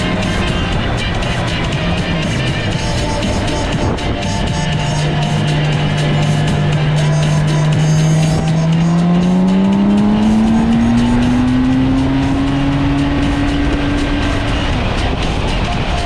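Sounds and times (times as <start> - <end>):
motorcycle engine accelerating: 0.0 - 16.0
wind rush: 8.3 - 16.0.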